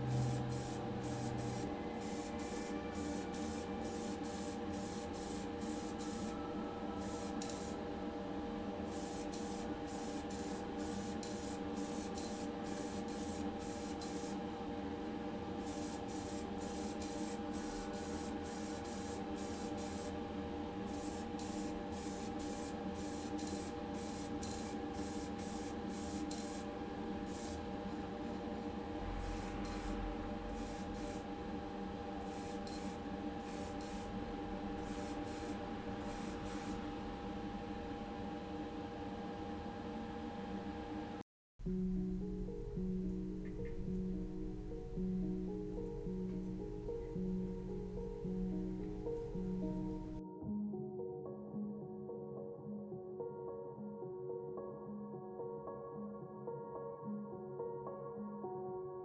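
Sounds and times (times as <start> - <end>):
steady hum: 0.0 - 18.5, 25.7 - 50.2
paint spray hissing in spurts: 0.1 - 6.3, 7.0 - 7.8, 8.9 - 14.4, 15.6 - 20.2, 20.9 - 27.6, 29.1 - 31.3, 32.2 - 36.8.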